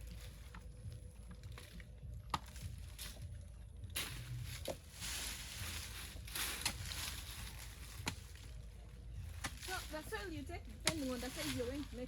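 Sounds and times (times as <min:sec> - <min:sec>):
hand tool knocking soil: 0:02.2 - 0:03.2, 0:03.9 - 0:08.6, 0:09.2 - 0:12.0
hand tool scraping soil: 0:04.0 - 0:12.0.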